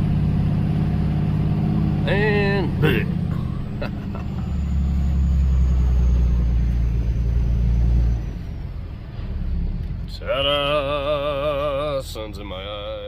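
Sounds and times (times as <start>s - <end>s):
truck engine rumbling: 0.0s - 13.0s.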